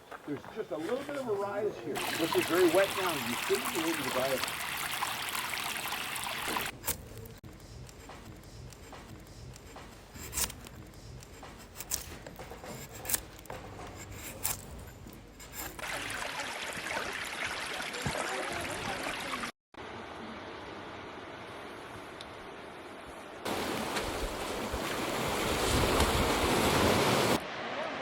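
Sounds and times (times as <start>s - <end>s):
running water: 0.0s - 6.8s, 15.6s - 19.5s, 23.5s - 27.4s.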